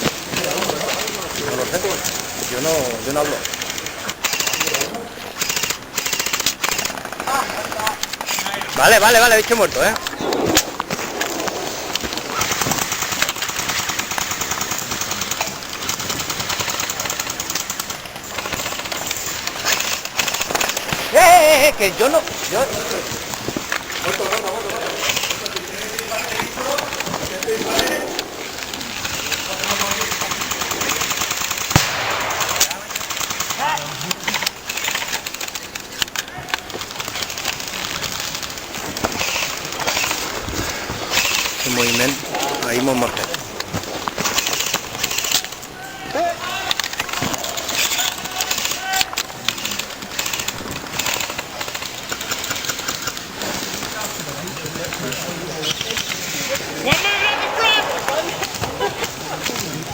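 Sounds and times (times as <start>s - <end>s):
airsoft guns firing full auto: 0.0s - 59.9s
low outdoor background: 0.0s - 59.9s
airsoft gunshots: 4.2s - 18.0s, 24.9s - 35.1s, 56.7s - 59.8s.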